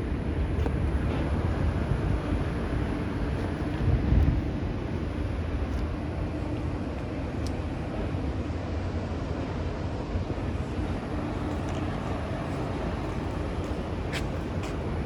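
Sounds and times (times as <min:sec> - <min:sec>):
jet aircraft rumble: 0:10.2 - 0:15.0.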